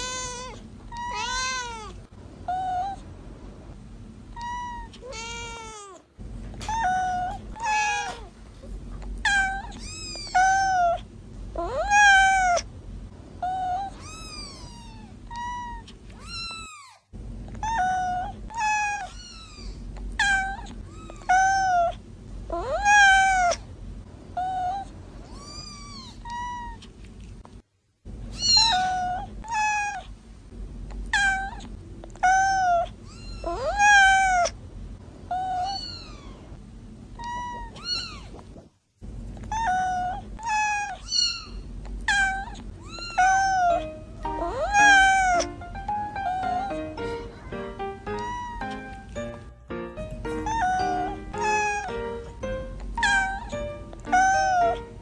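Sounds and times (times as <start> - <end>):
kittens meowing: 0.0 - 3.0, 4.4 - 6.0, 6.7 - 8.3, 9.2 - 11.0, 17.6 - 23.6, 28.4 - 30.0, 35.3 - 36.4, 39.5 - 49.4, 50.3 - 55.0.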